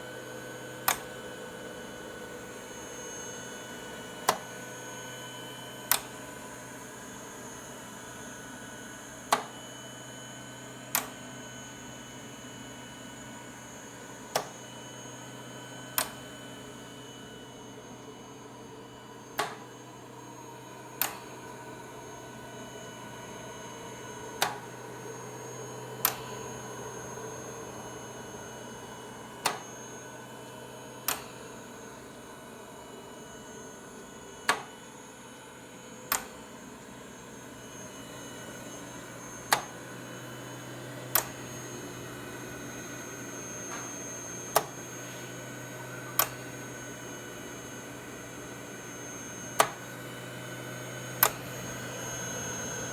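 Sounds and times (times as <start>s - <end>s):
ventilator whine: 0.0s - 52.9s
ventilator humming: 36.1s - 52.9s.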